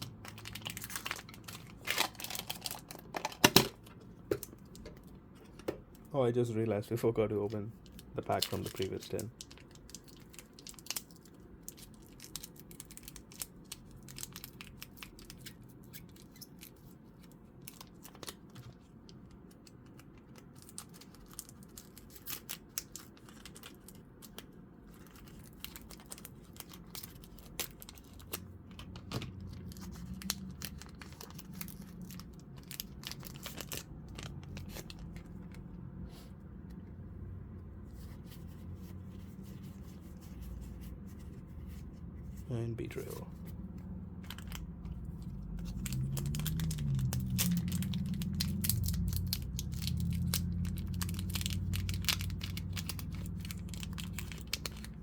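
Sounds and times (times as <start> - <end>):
foil wrapper tearing and crinkling: 0.0 - 3.7, 8.2 - 16.9, 20.1 - 35.4, 44.2 - 55.0
low steady hum: 0.0 - 55.0.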